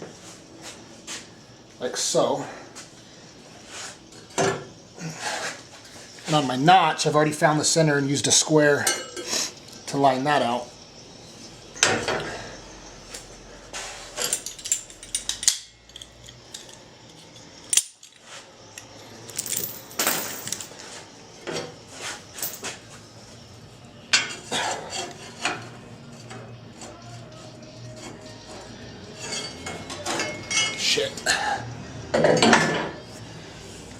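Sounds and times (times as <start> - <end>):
steel parts clinking and scraping: 13.0 - 21.0, 22.3 - 22.8, 29.2 - 30.9.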